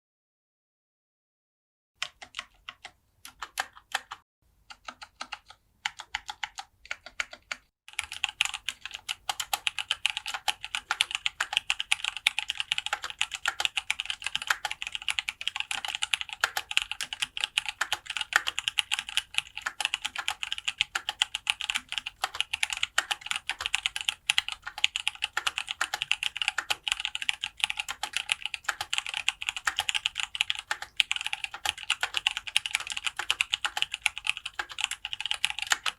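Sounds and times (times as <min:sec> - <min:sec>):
mechanical keyboard typing: 0:02.0 - 0:35.9.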